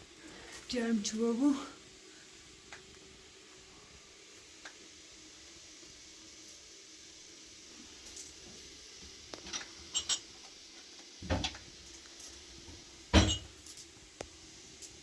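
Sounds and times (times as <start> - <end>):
kitchenware clinking and knocking: 13.2 - 13.5.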